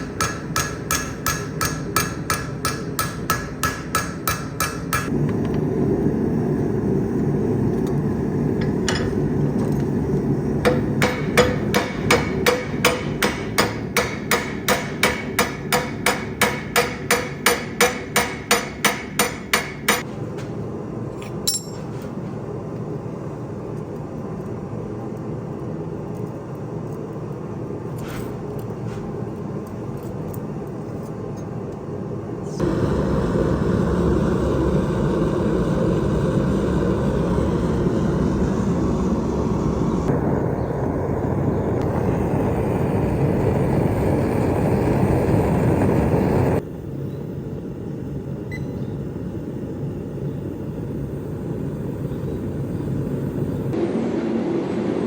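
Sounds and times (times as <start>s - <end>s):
hammer ringing on anvil: 0.0s - 5.1s, 10.7s - 20.0s, 21.4s - 21.8s
low rumble: 32.6s - 46.6s.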